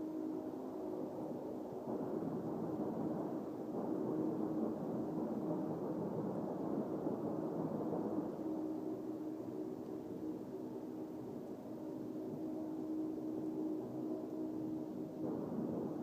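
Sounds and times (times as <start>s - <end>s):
low droning hum: 0.0s - 16.0s.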